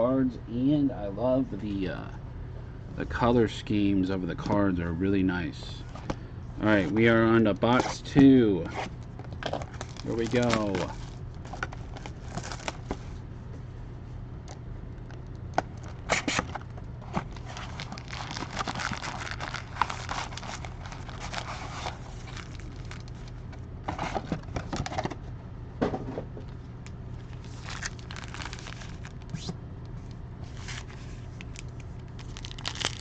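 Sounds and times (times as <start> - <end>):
steady low hum: 0.0 - 33.0
plastic wrapping crinkling and tearing: 9.0 - 12.9, 17.2 - 23.4, 27.2 - 29.5, 30.4 - 33.0.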